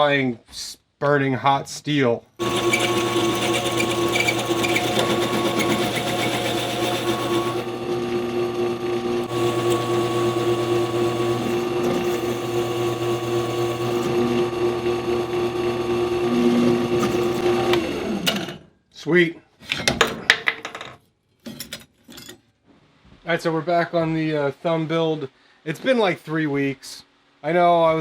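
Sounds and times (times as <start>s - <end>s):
drill press boring steel: 2.4s - 18.5s.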